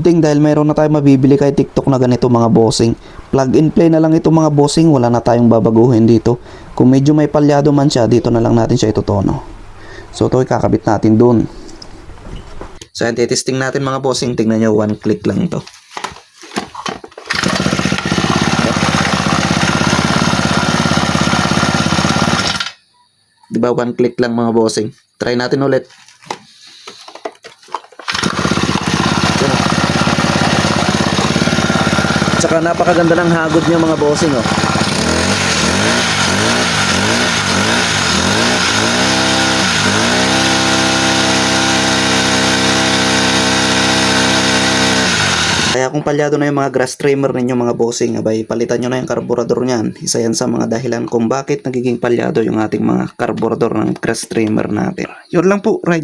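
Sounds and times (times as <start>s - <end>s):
brush cutter engine running: 16.6s - 22.8s, 27.7s - 45.8s.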